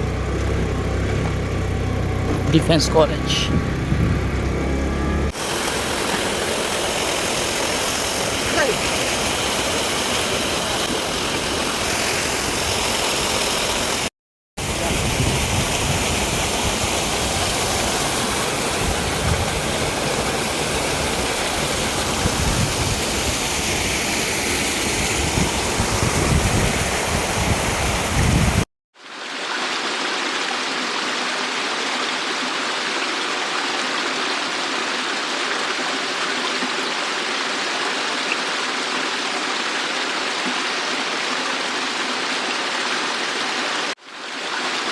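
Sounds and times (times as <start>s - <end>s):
rushing stream and waterfall: 0.0s - 4.7s, 5.3s - 44.9s
deep rumble: 3.2s - 5.3s.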